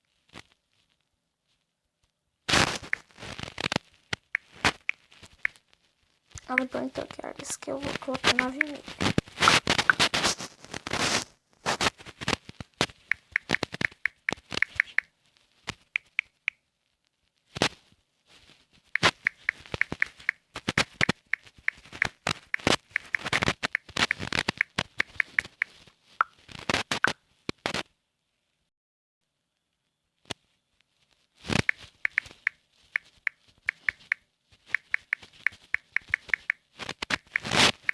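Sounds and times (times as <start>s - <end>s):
fingers tapping touchscreen: 6.4s - 10.2s, 13.1s - 15.1s, 16.0s - 16.6s, 19.0s - 26.4s, 31.6s - 37.9s.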